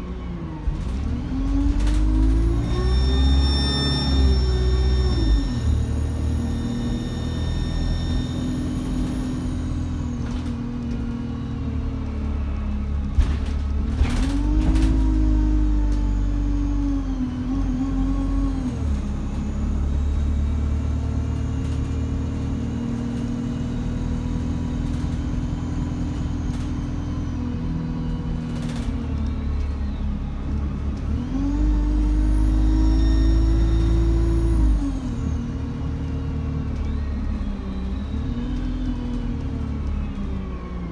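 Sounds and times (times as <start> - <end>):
diesel bus engine: 0.0 - 40.9
turbo whistle: 2.7 - 8.7.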